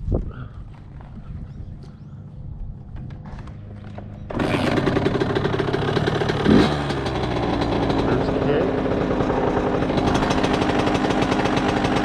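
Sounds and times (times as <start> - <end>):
dirt bike two-stroke engine: 3.2 - 12.0
engine revving: 3.4 - 12.0.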